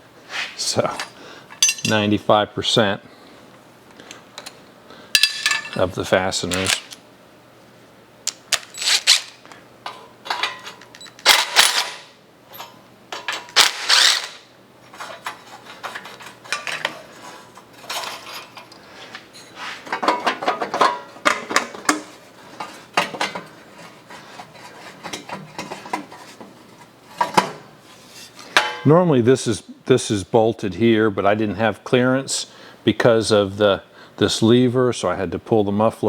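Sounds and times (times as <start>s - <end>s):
hand tools clinking on metal: 0.9s - 2.1s, 5.2s - 5.9s, 9.9s - 14.3s.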